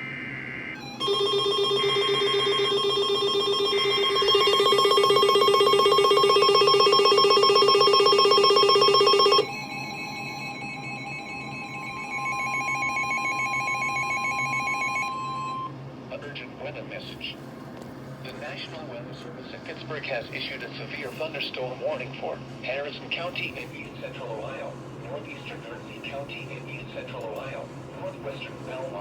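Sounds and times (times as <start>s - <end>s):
shrill electronic alert tones: 0.8s - 15.7s.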